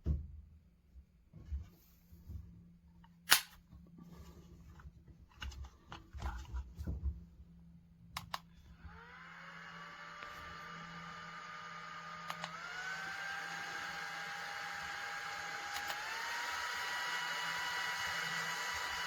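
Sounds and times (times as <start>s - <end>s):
fan motor whine: 8.7s - 19.0s.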